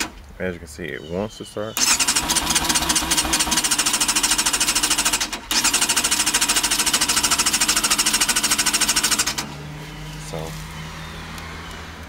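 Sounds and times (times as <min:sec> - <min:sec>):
electric starter cranking engine: 0:01.8 - 0:09.6.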